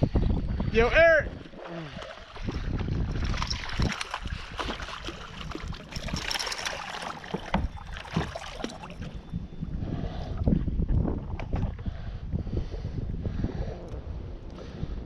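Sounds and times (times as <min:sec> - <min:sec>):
water lapping against kayak hull: 0:01.2 - 0:10.6.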